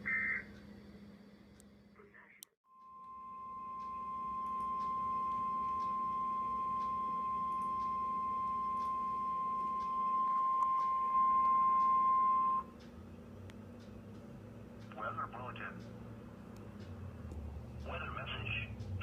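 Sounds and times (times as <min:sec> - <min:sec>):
radio hum and hiss: 0:00.0 - 0:00.5, 0:14.9 - 0:15.8, 0:17.8 - 0:18.8
high-pitched alarm beep: 0:02.9 - 0:12.7.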